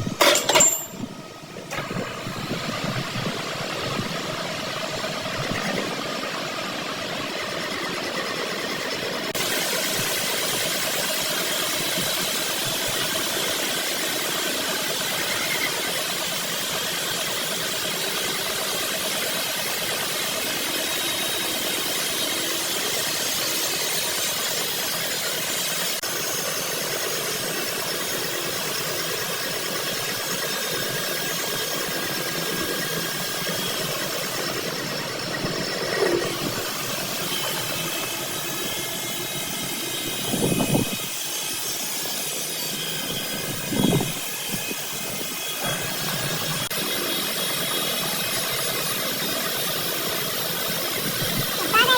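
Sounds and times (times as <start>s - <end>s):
workshop machinery hissing: 0.0s - 51.9s.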